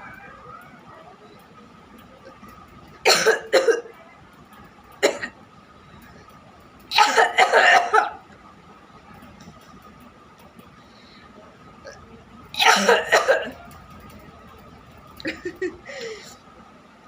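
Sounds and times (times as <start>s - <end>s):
person coughing: 3.1s - 3.9s, 6.9s - 8.2s, 12.6s - 13.6s.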